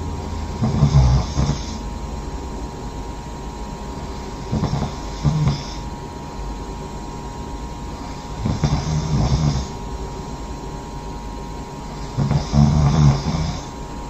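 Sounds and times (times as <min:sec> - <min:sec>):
person snoring: 0:00.2 - 0:01.8, 0:04.0 - 0:05.9, 0:07.9 - 0:09.8, 0:11.8 - 0:13.8.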